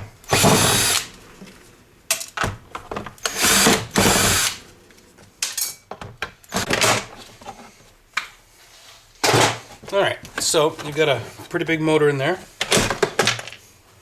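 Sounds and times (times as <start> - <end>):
power drill-driver running: 0.3 - 1.1, 3.2 - 4.6.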